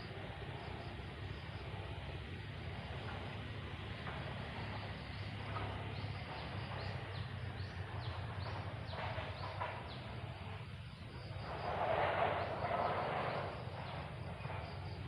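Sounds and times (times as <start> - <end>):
steady low hum and hiss: 0.0 - 15.0.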